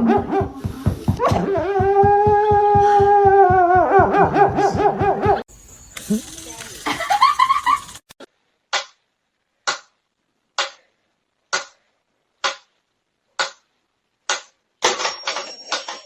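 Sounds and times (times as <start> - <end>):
rustling: 5.6 - 8.2.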